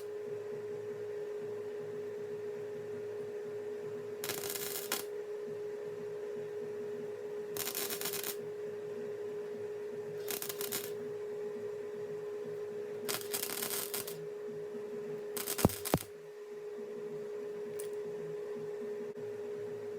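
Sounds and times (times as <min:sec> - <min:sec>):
steady hum: 0:00.0 - 0:19.9
welding arc crackle: 0:04.2 - 0:05.1, 0:07.6 - 0:08.4, 0:10.2 - 0:11.0, 0:13.1 - 0:14.2, 0:15.4 - 0:16.1.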